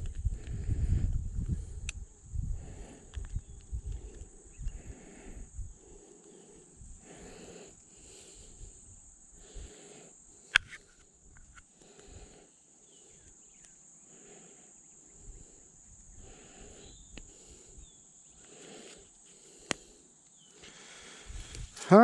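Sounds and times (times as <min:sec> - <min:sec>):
insect drone: 0:00.0 - 0:22.0
sharp clicks: 0:10.5 - 0:11.6.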